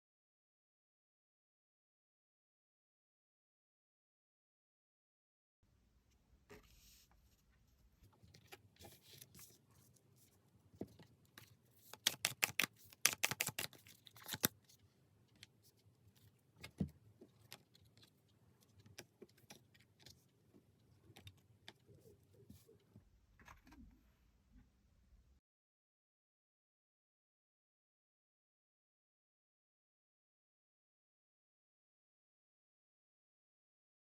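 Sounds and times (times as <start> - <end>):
cards being shuffled: 11.4 - 14.8
sharp card snaps: 11.9 - 14.5.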